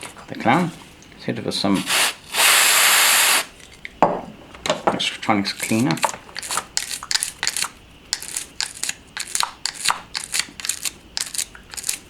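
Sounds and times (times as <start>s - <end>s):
small brush scrubbing metal: 5.5s - 12.0s.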